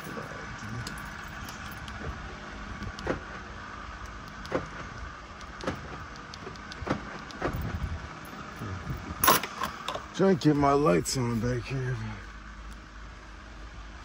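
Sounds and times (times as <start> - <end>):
car fan hum: 0.0 - 14.0.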